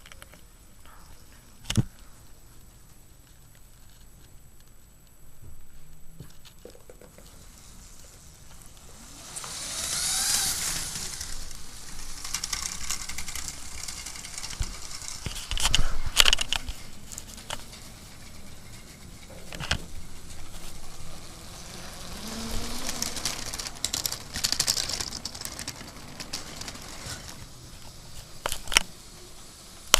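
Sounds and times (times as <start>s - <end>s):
toy train whirring on track: 7.3s - 29.9s
sharp clacks: 8.7s - 28.9s.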